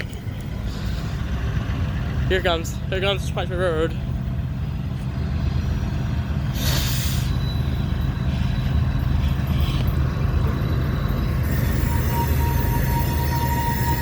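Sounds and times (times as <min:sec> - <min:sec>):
diesel train engine rumble: 0:00.0 - 0:14.0
brief hiss: 0:06.5 - 0:07.3.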